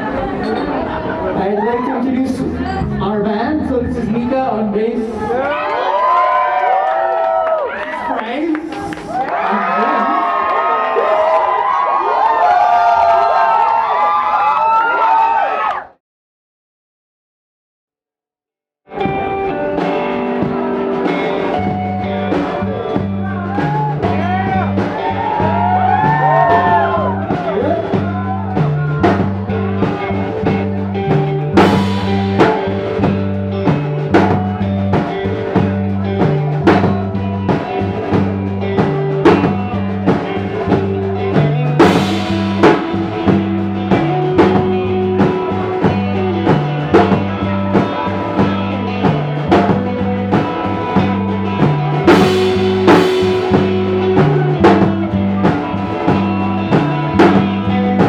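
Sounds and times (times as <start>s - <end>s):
guitars playing: 0.0s - 5.3s, 18.9s - 58.0s
bass guitar line: 0.0s - 6.6s, 18.9s - 58.0s
drum kit beat: 18.9s - 58.0s.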